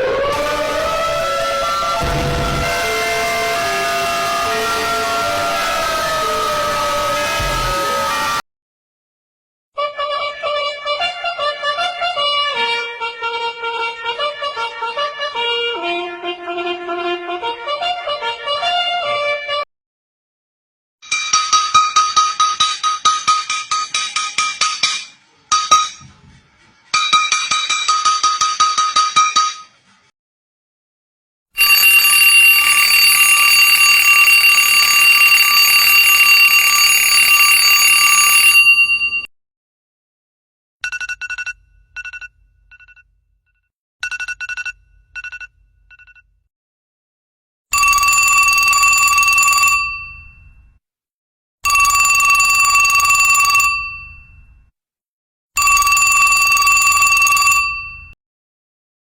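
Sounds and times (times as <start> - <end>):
telephone bell ringing: 31.6 - 39.3, 47.7 - 50.4, 51.6 - 54.3, 55.6 - 58.2.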